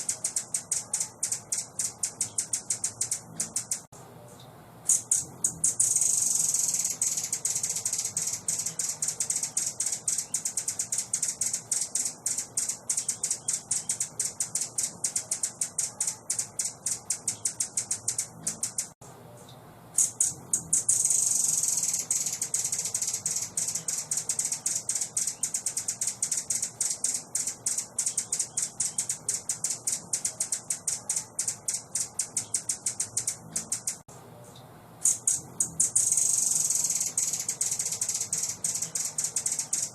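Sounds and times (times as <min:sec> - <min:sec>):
songbird chattering trill: 0:00.0 - 0:03.9, 0:04.9 - 0:19.0, 0:20.0 - 0:34.0, 0:35.0 - 0:39.9.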